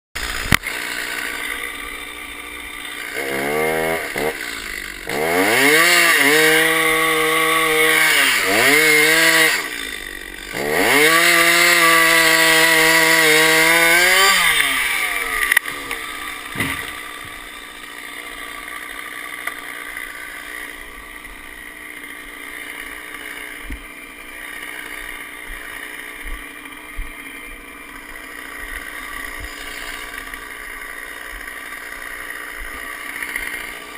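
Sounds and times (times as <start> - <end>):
chainsaw revving: 0.2 - 33.9
short knocks: 16.5 - 17.4.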